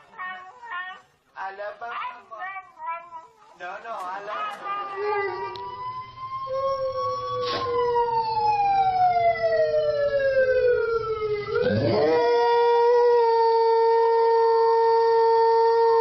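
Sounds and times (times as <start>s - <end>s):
dog howling: 4.6s - 5.7s, 6.5s - 8.2s, 11.6s - 16.0s.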